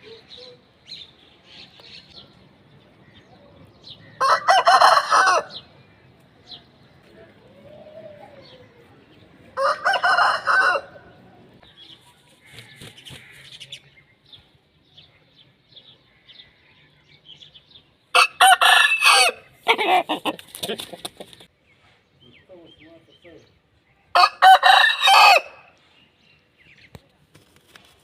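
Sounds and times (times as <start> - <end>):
roosters crowing: 4.1 - 5.7, 9.5 - 11.6, 18.1 - 21.0, 24.1 - 25.7.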